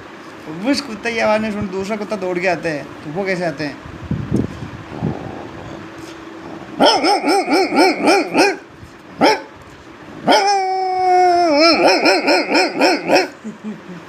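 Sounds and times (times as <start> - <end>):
man imitating dog barks: 6.6 - 9.5, 10.2 - 13.4.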